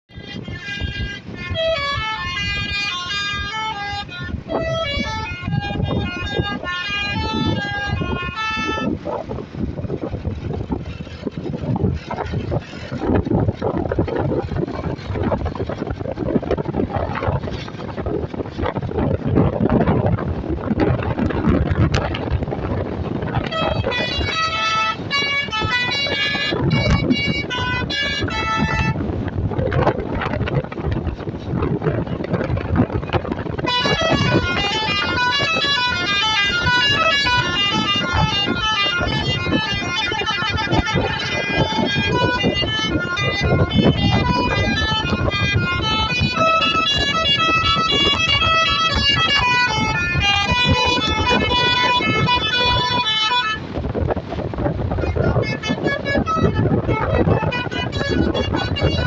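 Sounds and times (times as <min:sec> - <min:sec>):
road noise: 0:00.0 - 0:59.0
vehicle engine rumble: 0:00.0 - 0:59.0
wind buffeting microphone: 0:00.0 - 0:59.0
multi-tone bus horn tune: 0:00.1 - 0:09.6, 0:21.9 - 0:29.2, 0:33.5 - 0:53.9, 0:55.0 - 0:59.0.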